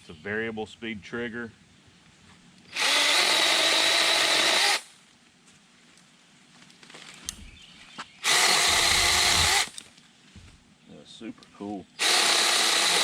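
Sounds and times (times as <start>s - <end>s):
electric mini chainsaw whine: 2.7s - 4.9s, 8.2s - 9.8s, 12.0s - 13.0s.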